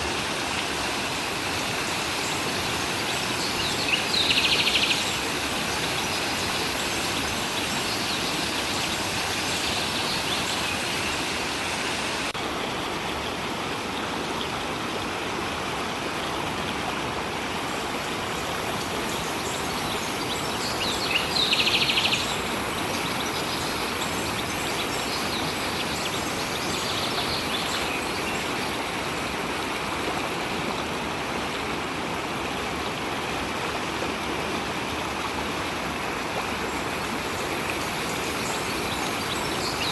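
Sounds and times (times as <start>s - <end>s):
stream rushing: 0.0s - 39.9s
trilled bird calls: 18.6s - 28.5s.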